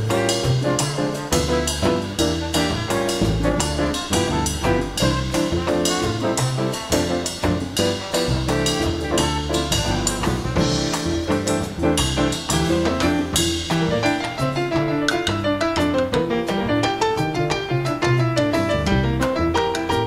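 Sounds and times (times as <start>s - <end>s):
drum kit steady rhythm: 0.0s - 20.0s
brass section playing: 0.8s - 11.6s.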